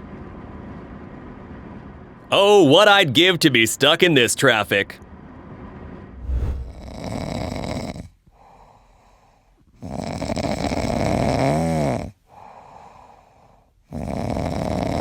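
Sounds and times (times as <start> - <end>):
rising and falling tone: 6.2 - 6.9
quiet breaths: 8.2 - 9.8, 12.2 - 14.4
animal snoring: 9.8 - 12.2, 13.9 - 15.0.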